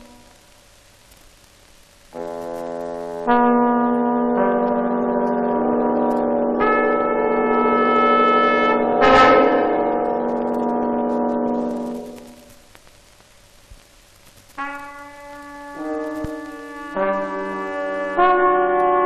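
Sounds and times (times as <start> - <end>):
orchestral film music chords: 3.9 - 12.4.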